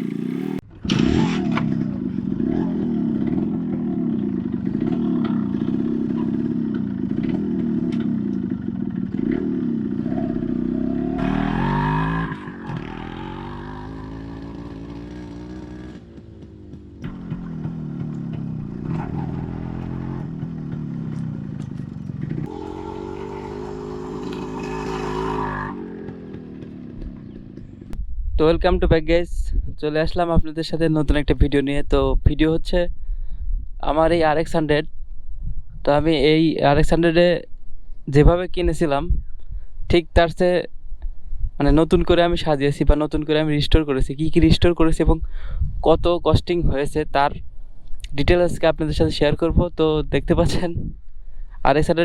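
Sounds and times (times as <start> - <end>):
motorcycle engine revving: 0.0 - 28.0.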